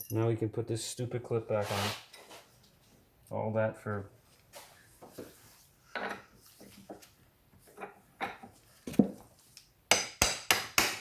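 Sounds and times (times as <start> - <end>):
metal tools clinking: 0.0 - 0.2.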